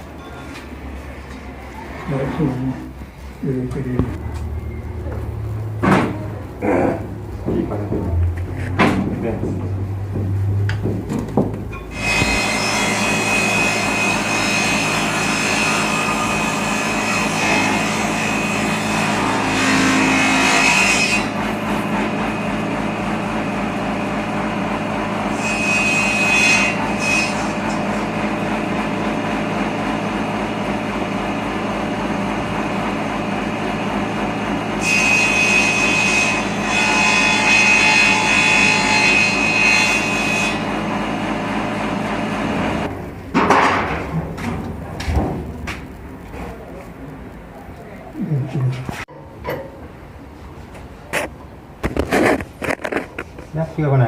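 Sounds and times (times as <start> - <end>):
power tool cutting wood: 11.9 - 22.8, 25.0 - 29.1, 34.0 - 42.9.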